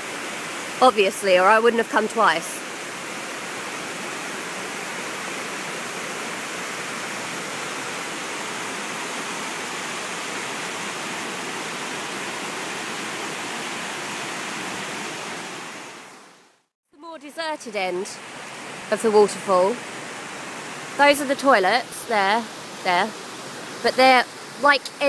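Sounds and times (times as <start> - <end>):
waterfall roar: 0.0 - 16.3, 17.4 - 25.0.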